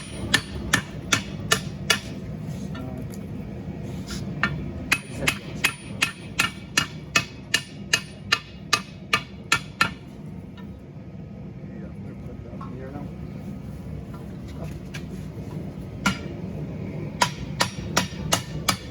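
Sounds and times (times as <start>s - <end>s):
hammer striking hot steel: 0.0s - 2.8s, 4.4s - 10.7s, 16.0s - 16.4s, 17.1s - 18.9s
steady low hum: 0.0s - 18.9s.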